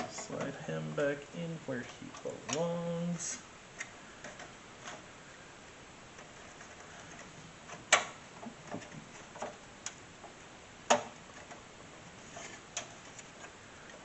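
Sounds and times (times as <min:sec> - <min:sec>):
loud plastic snaps: 0:07.1 - 0:10.0.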